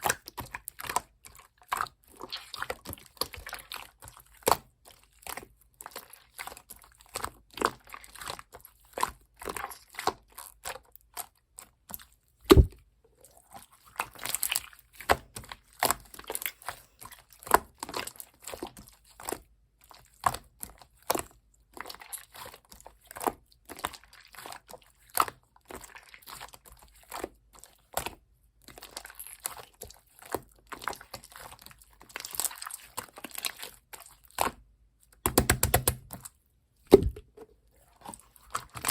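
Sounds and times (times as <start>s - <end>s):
slime squished by hand: 0.0s - 12.8s, 13.4s - 38.9s
thump: 12.5s - 12.8s.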